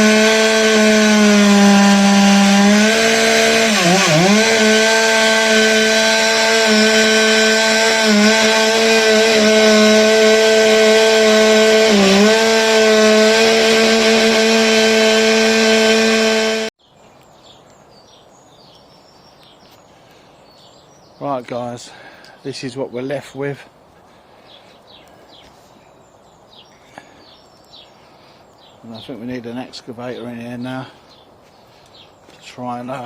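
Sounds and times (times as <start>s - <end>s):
chainsaw cutting wood: 0.0s - 16.8s.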